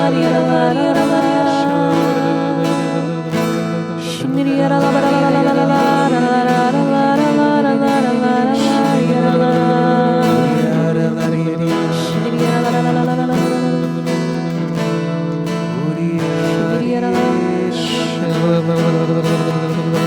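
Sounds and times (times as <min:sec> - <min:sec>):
acoustic guitar strumming: 0:00.0 - 0:20.0.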